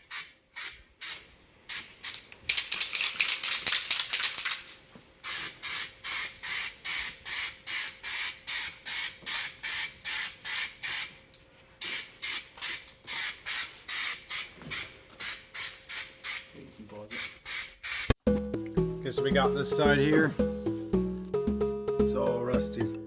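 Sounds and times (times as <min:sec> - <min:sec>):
aerosol can spraying bursts: 0:00.0 - 0:04.5, 0:05.2 - 0:11.1, 0:11.8 - 0:16.5, 0:17.1 - 0:18.2.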